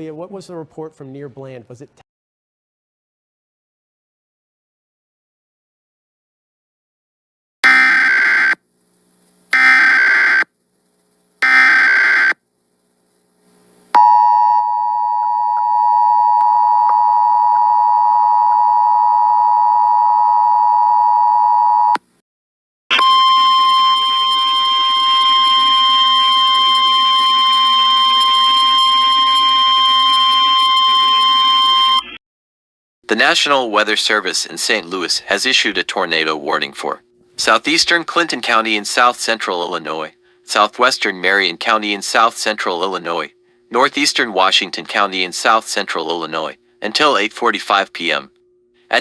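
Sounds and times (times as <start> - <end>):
steady alarm tone: 7.6 - 8.6, 9.5 - 10.5, 11.4 - 12.4, 14.0 - 22.0, 22.9 - 32.2
two-tone attention signal: 14.0 - 22.0, 22.9 - 32.2.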